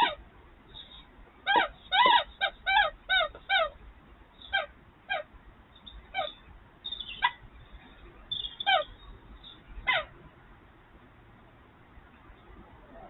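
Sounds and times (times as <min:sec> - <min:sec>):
short high-pitched animal calls: 0:00.8 - 0:03.8, 0:05.9 - 0:07.4.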